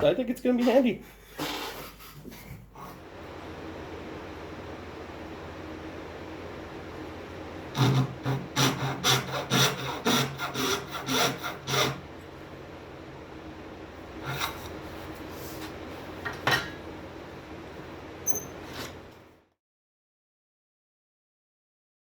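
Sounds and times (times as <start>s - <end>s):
hand sanding plywood: 7.7s - 12.0s.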